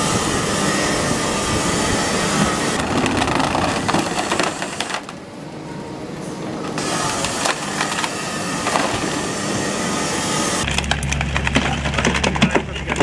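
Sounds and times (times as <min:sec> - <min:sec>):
wood splitting and splintering: 0:00.6 - 0:05.3, 0:06.6 - 0:12.7.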